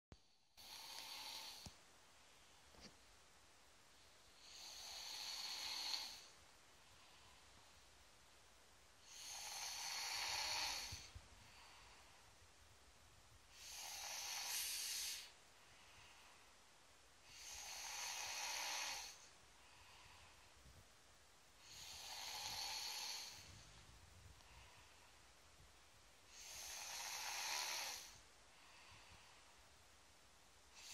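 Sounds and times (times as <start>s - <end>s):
quiet breathing: 0.1s - 3.1s, 3.9s - 30.9s
child snoring loudly: 0.6s - 1.7s, 4.4s - 6.3s, 9.1s - 11.1s, 13.6s - 15.3s, 17.3s - 19.2s, 21.7s - 23.5s, 26.3s - 28.2s.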